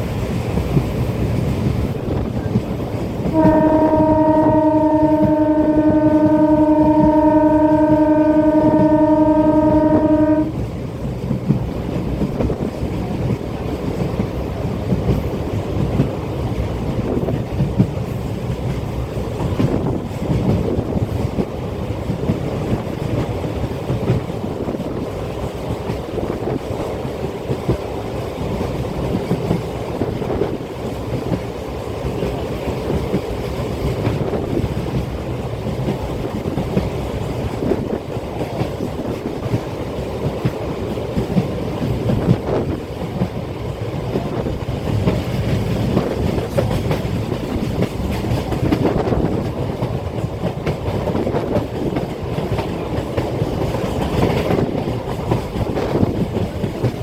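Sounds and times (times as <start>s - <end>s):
train running rumble: 0.0s - 57.0s
train horn: 3.3s - 10.6s.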